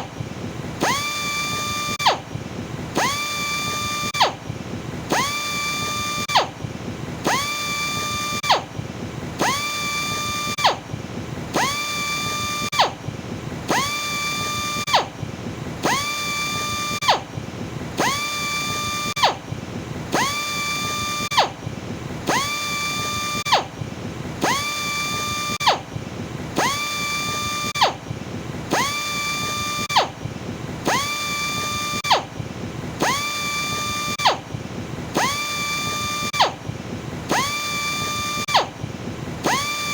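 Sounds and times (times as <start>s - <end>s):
electric sander motor whining: 0.8s - 2.2s, 3.0s - 4.4s, 5.1s - 6.5s, 7.2s - 8.6s, 9.4s - 10.8s, 11.6s - 12.9s, 13.7s - 15.1s, 15.8s - 17.2s, 18.0s - 19.4s, 20.1s - 21.5s, 22.3s - 23.7s, 24.4s - 25.8s, 26.6s - 27.9s, 28.7s - 30.1s, 30.8s - 32.2s, 33.0s - 34.4s, 35.2s - 36.5s, 37.3s - 38.7s, 39.4s - 39.9s.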